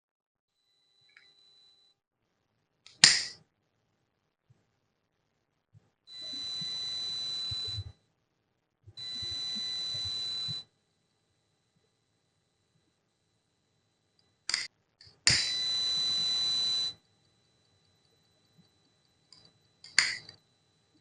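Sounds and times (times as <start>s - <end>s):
sharp click: 2.9s - 3.4s
alarm buzzer high beep: 6.1s - 8.0s, 9.0s - 10.8s, 15.3s - 17.1s, 19.8s - 20.4s.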